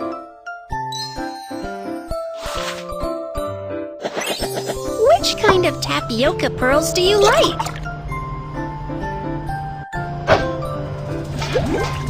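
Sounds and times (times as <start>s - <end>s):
bouncy children's tune with bells: 0.0s - 2.3s.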